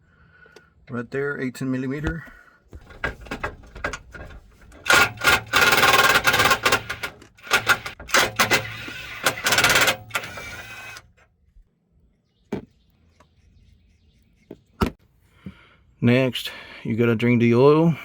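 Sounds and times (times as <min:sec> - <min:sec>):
impact wrench hammering rattle: 0:02.1 - 0:11.1.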